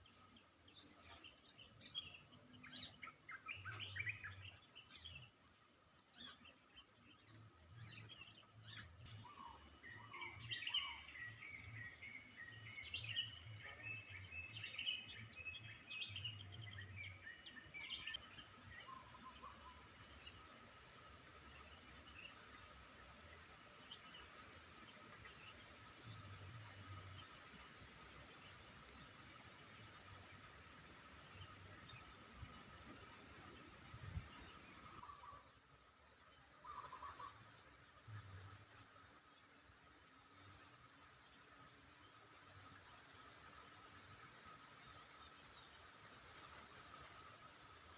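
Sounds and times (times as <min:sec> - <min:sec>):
insects trilling: 0:00.0 - 0:35.4.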